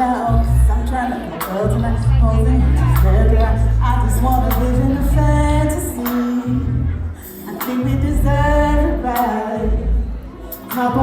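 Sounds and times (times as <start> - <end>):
live band with heavy bass: 0.0 - 11.0.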